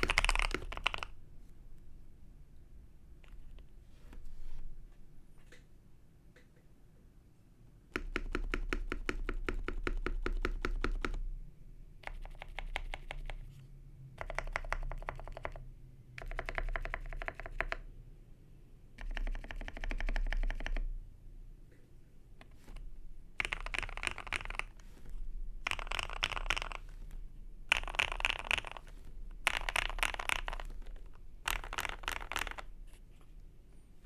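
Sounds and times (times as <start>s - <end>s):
typing on mechanical keyboard: 0.0s - 1.2s, 8.0s - 11.2s, 12.0s - 13.5s, 14.2s - 15.6s, 16.2s - 17.9s, 19.0s - 20.9s, 23.4s - 32.7s.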